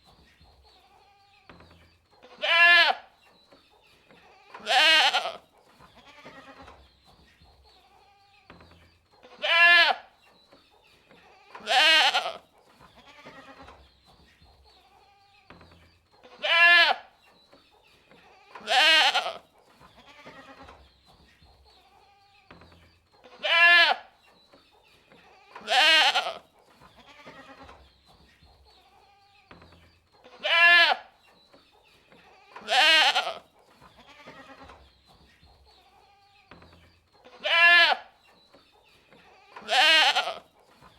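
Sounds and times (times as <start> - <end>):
goats bleating: 2.4 - 3.0, 4.6 - 5.4, 9.4 - 10.0, 11.5 - 12.4, 16.4 - 17.0, 18.5 - 19.4, 23.3 - 24.0, 25.4 - 26.4, 30.3 - 31.1, 32.4 - 33.4, 34.0 - 34.7, 37.3 - 38.1, 39.4 - 40.4.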